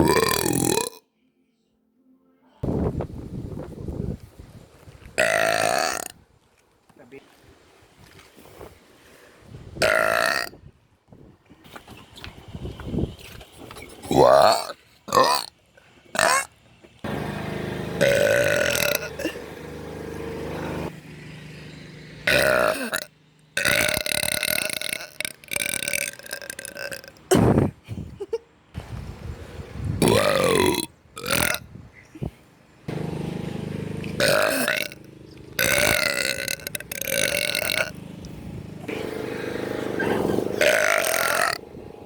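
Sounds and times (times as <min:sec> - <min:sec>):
girl burping loudly: 0:00.0 - 0:01.0, 0:05.2 - 0:06.1, 0:09.8 - 0:10.5, 0:14.1 - 0:15.5, 0:18.0 - 0:19.4, 0:22.3 - 0:27.7, 0:30.0 - 0:31.7, 0:34.2 - 0:35.0, 0:35.6 - 0:37.9, 0:40.6 - 0:41.6.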